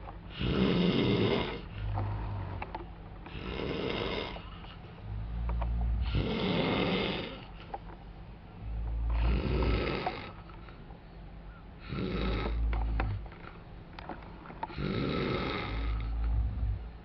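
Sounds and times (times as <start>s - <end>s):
man snoring: 0.0s - 2.6s, 3.3s - 5.2s, 5.8s - 7.6s, 8.6s - 10.4s, 11.8s - 13.2s, 14.7s - 16.9s.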